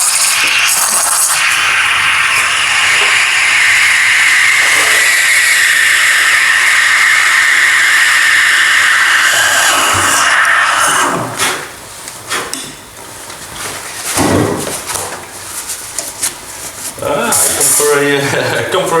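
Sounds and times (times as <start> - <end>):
steam wand hissing: 0.0 - 11.8.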